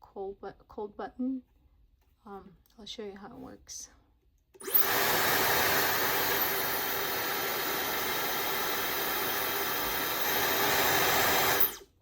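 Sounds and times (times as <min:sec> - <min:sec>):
hair dryer running: 0:04.6 - 0:12.0.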